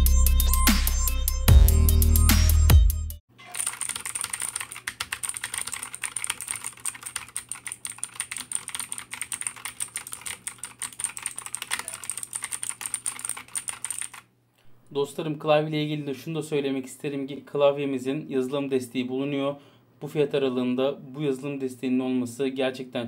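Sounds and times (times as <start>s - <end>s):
mechanical keyboard typing clicks: 3.5s - 14.2s.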